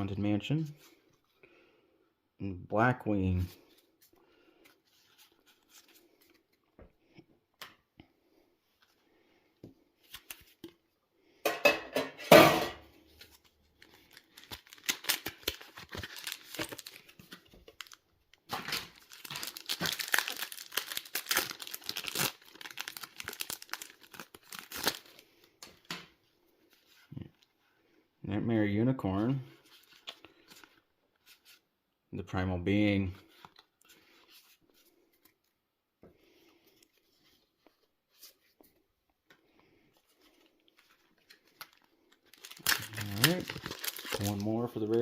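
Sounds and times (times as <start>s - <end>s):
foil wrapper crinkling: 13.3s - 25.2s, 40.8s - 45.0s
foil pack tearing: 14.1s - 17.0s, 18.6s - 25.1s, 42.3s - 45.0s.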